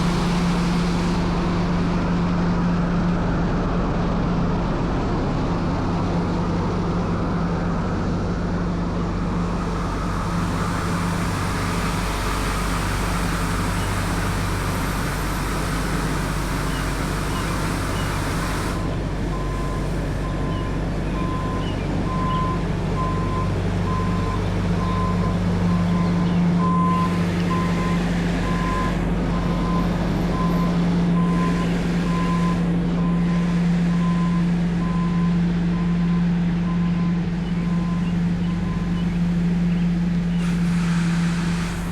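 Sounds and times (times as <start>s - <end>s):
street sweeper engine hum: 0.0s - 41.9s
reversing alarm beeping: 9.2s - 39.7s.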